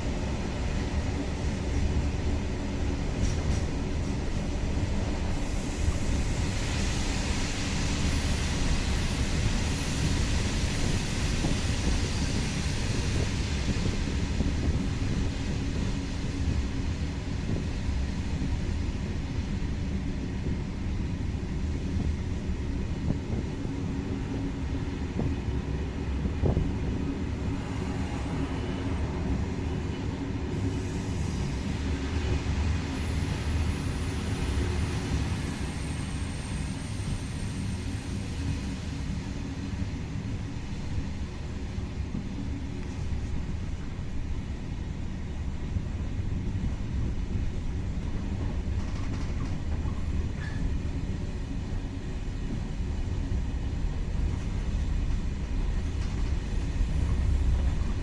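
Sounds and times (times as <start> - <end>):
train wheels rumbling on rails: 0.0 - 58.0
high hiss: 30.6 - 44.4.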